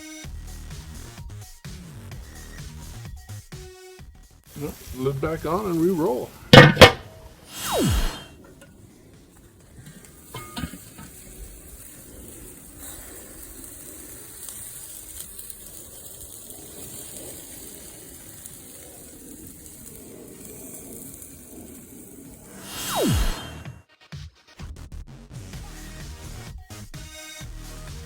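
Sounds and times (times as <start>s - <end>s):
chicken sizzling over charcoal: 0.0s - 3.6s, 4.4s - 23.6s
falling whoosh: 7.1s - 8.4s, 22.4s - 23.7s.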